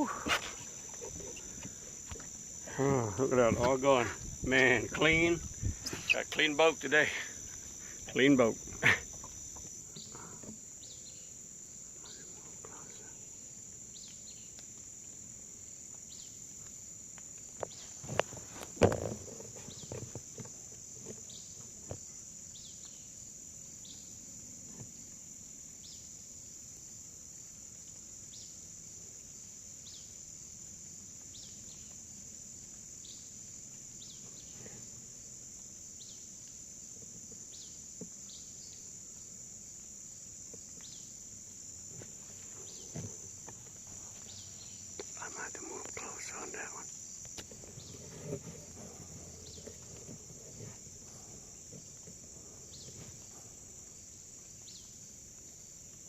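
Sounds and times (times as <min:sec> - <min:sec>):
insects droning: 0:00.0 - 0:56.0.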